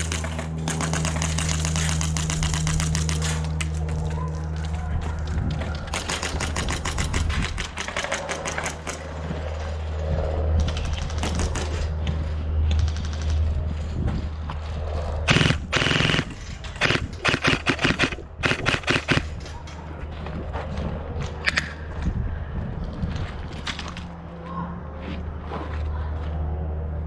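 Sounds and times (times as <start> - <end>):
airsoft guns firing bursts: 15.3 - 19.4.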